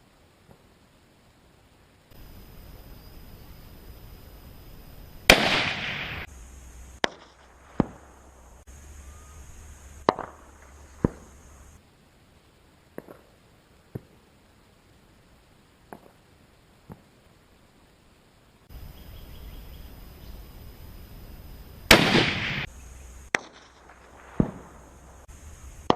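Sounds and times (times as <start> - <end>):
rifle report with rumbling tail: 2.2 - 11.8, 18.7 - 25.9
distant rifle cracks: 5.3 - 6.3, 21.9 - 22.7.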